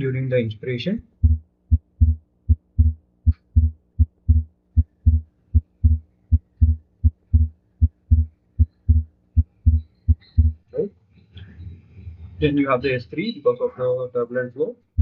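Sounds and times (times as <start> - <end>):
faint steady hum: 0.0 - 15.0
heartbeat lub-dub thumps: 1.2 - 10.7.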